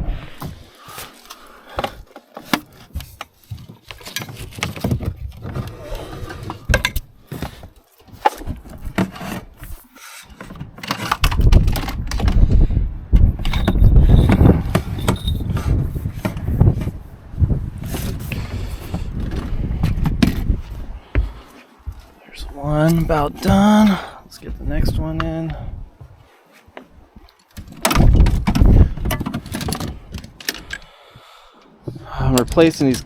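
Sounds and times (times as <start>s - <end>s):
wind buffeting microphone: 10.6s - 26.2s, 27.0s - 30.4s
cable scraping through a hole: 13.4s - 17.0s.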